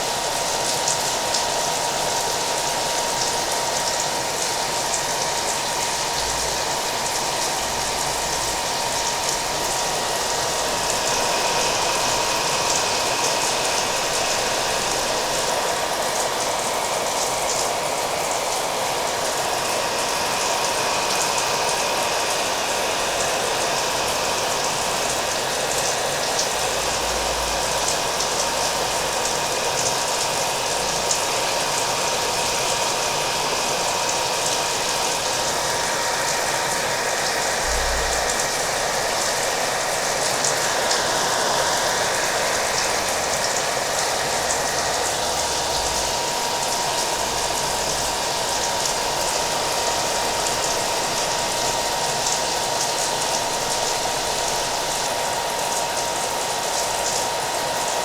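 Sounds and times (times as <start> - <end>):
hair dryer running: 0.0 - 58.0
rain patter: 0.0 - 58.0.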